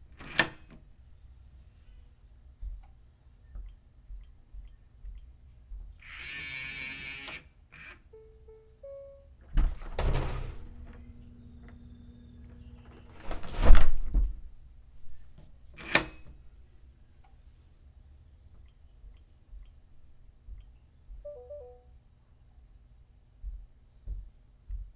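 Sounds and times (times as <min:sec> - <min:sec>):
heavy lock and door clunks: 0:00.1 - 0:00.8, 0:09.5 - 0:11.8, 0:12.5 - 0:16.6
lock motor buzzing whir: 0:06.0 - 0:08.1, 0:09.6 - 0:16.6
short electronic beeps: 0:08.2 - 0:09.3, 0:21.3 - 0:21.8
sharp click: 0:15.4 - 0:16.4.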